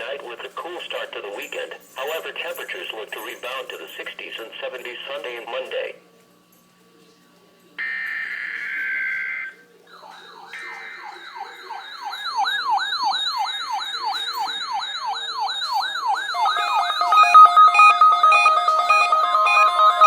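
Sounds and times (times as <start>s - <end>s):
alarm siren rising sweeps: 7.8s - 20.0s
fast pulsing beep tone: 9.3s - 20.0s.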